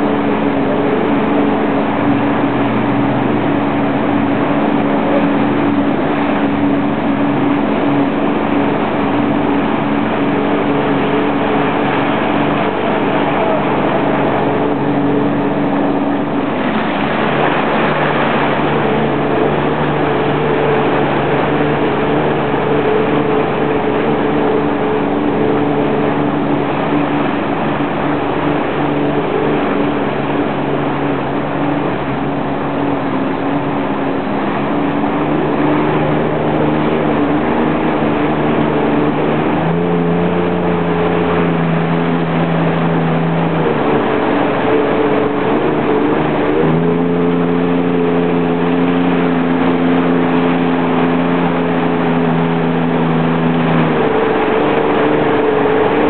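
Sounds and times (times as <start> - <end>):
jet ski engine running: 0.0 - 56.0
wind and water noise: 0.0 - 56.0.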